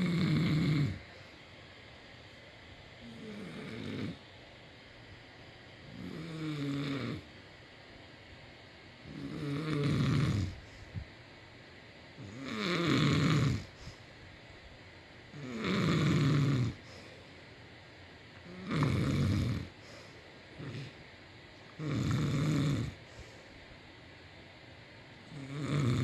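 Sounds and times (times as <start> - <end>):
man snoring: 0.0 - 1.1, 3.0 - 4.2, 5.9 - 7.3, 9.1 - 10.7, 12.2 - 13.8, 15.4 - 16.8, 18.5 - 19.8, 20.6 - 21.0, 21.8 - 23.0, 25.3 - 26.0
quiet breathing: 0.0 - 8.1, 9.0 - 26.0.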